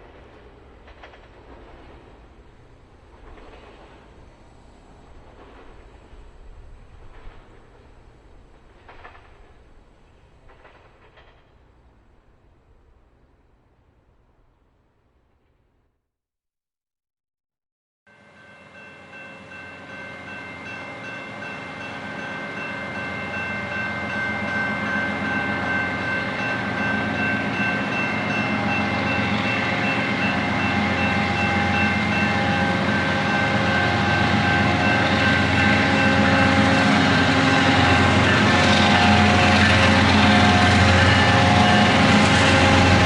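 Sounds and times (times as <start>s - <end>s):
train engine drone: 0.0s - 14.6s, 18.2s - 43.0s
steady high tones: 42.2s - 43.0s.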